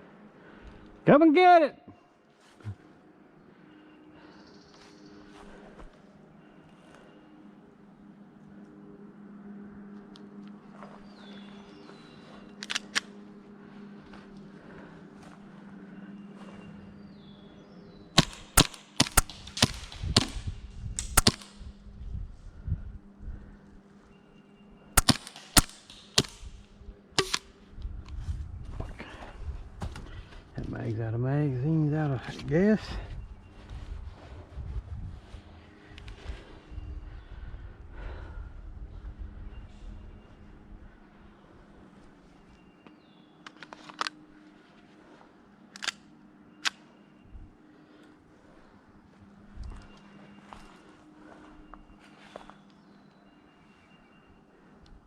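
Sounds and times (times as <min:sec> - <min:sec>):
airsoft pistol shots: 0:18.2 - 0:21.8, 0:25.0 - 0:27.5.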